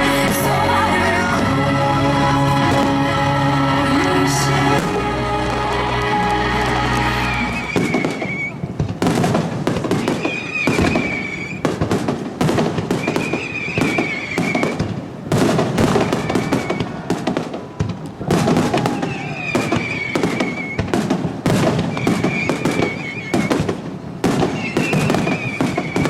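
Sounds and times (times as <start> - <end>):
music with held chords: 0.0 - 7.7
fireworks bangs and crackles: 4.3 - 26.0
fireworks whistles: 6.8 - 26.0.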